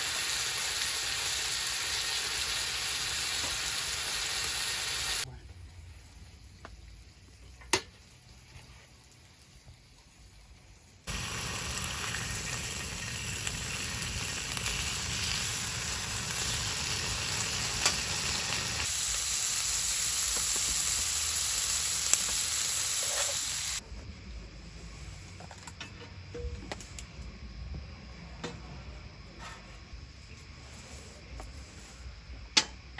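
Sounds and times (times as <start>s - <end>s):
food sizzling in hot oil: 0.0s - 5.2s, 7.5s - 23.8s.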